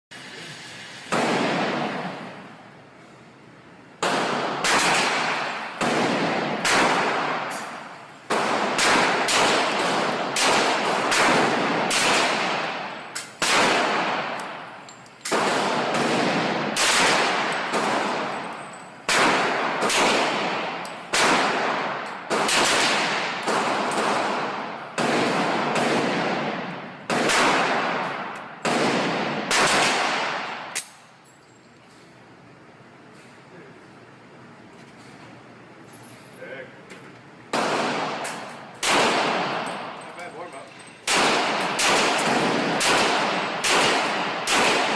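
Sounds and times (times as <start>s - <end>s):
pistol shots with echo: 1.1s - 2.3s, 4.0s - 31.0s, 37.5s - 40.4s, 41.0s - 44.9s.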